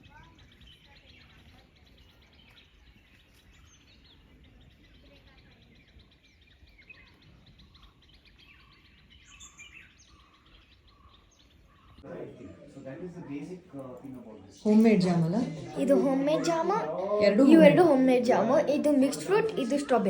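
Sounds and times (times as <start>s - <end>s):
whistled bird calls: 0.0s - 12.0s
small birds chirping: 0.0s - 20.0s.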